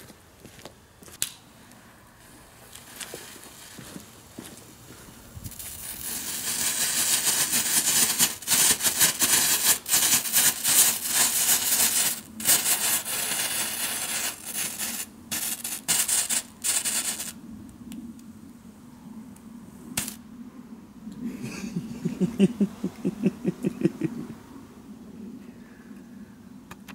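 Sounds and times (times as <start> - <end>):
strobe fireworks fizzing hiss: 1.2 - 17.6, 19.9 - 20.2, 21.2 - 24.4.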